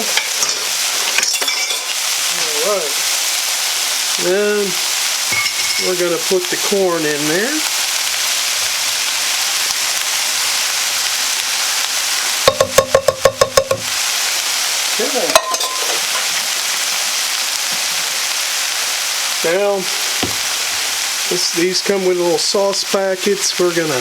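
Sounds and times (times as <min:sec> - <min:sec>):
food sizzling in oil: 0:00.0 - 0:24.0
ringing metal knocks: 0:12.5 - 0:13.9.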